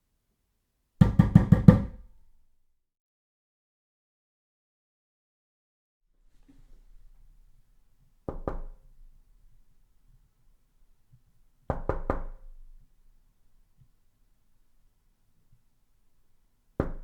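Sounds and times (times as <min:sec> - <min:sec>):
knocking on a door: 0:01.0 - 0:02.1, 0:08.3 - 0:08.8, 0:11.7 - 0:12.4, 0:16.8 - 0:17.0.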